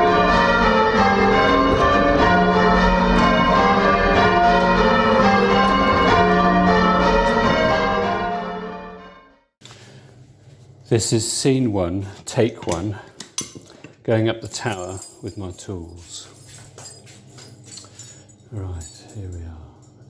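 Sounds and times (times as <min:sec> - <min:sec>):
church bells ringing: 0:00.0 - 0:09.2.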